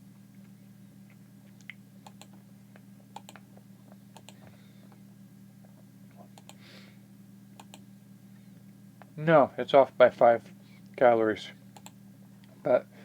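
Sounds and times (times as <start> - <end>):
steady low hum: 0.0 - 13.0
clicks of keys pressed: 2.1 - 2.4.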